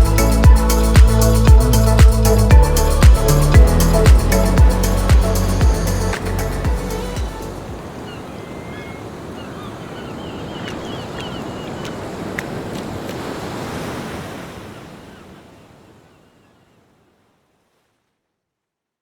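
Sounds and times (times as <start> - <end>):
wind: 0.0 - 18.2
sea waves washing on shore: 4.0 - 16.1.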